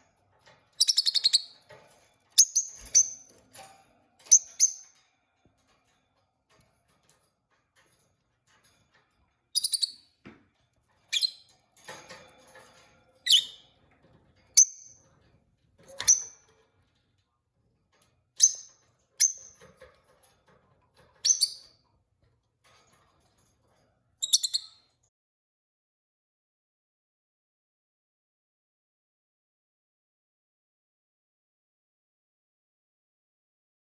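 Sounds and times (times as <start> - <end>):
lovebird shrill chirps: 0.8 - 1.6, 24.2 - 24.7.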